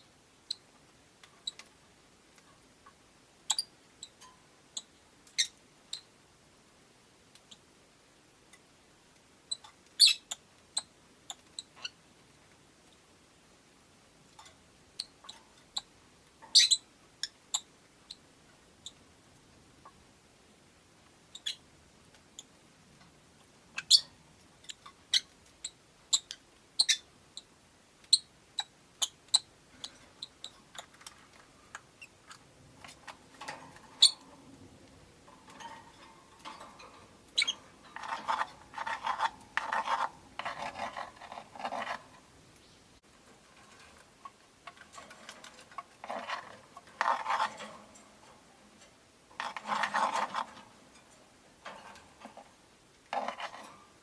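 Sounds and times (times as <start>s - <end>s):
lovebirds chirping: 9.5s - 11.9s, 16.5s - 18.2s, 21.3s - 21.7s, 23.7s - 27.5s, 33.8s - 34.3s, 37.3s - 37.7s, 42.5s - 43.1s.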